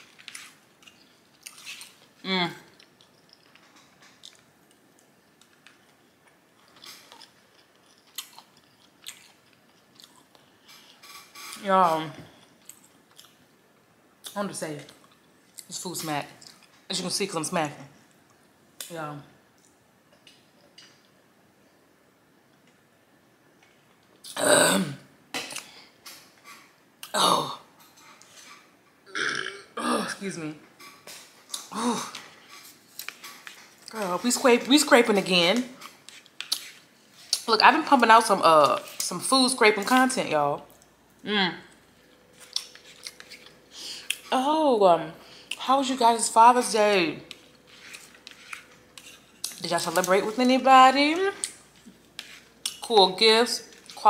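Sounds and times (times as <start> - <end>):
person chewing food: 0.0 - 11.2, 41.7 - 44.2, 47.3 - 50.1
woman burping loudly: 24.3 - 25.1, 29.1 - 30.3.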